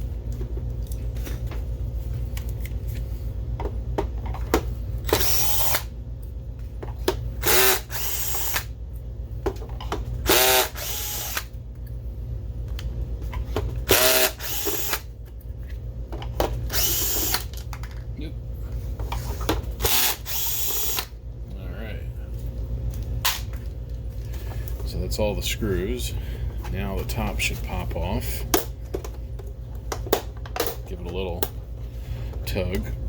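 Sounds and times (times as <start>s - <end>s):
steady low hum: 0.0s - 33.0s
power driver whirring: 5.0s - 5.9s, 7.4s - 8.7s, 10.2s - 11.5s, 13.8s - 15.1s, 16.7s - 17.5s, 19.8s - 21.2s
screws clicking: 16.7s - 17.4s, 19.8s - 21.1s.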